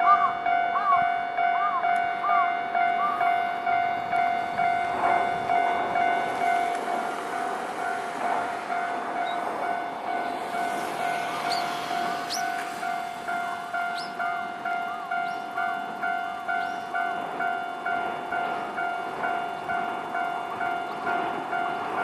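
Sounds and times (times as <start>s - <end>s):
electric train rumbling past: 0.0s - 22.0s
level-crossing warning bell: 0.0s - 22.0s.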